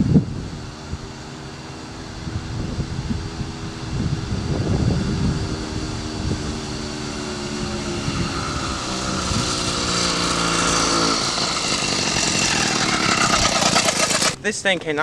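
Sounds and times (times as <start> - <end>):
two-stroke engine labouring: 0.4 - 14.5.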